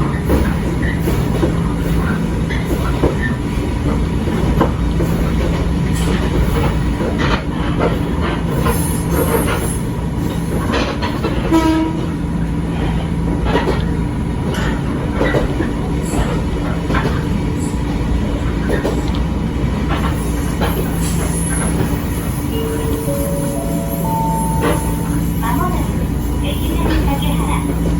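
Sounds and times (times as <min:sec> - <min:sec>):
train motor hum: 0:18.6 - 0:27.9.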